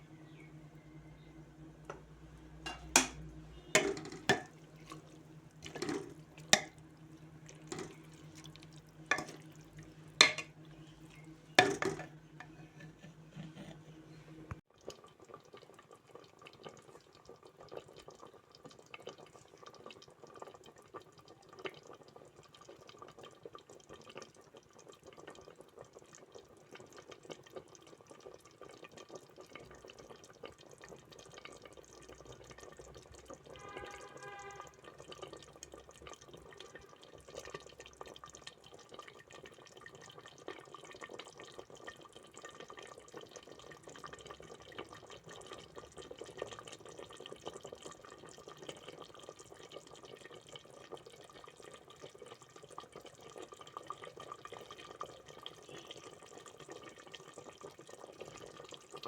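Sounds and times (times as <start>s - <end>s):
low steady hum: 0.0s - 14.6s
dishes and utensils clinking: 2.7s - 3.2s, 3.8s - 5.0s, 5.6s - 6.7s, 7.7s - 8.0s, 9.1s - 9.5s, 10.2s - 10.6s, 11.6s - 13.8s
water running from tap: 3.8s - 10.6s.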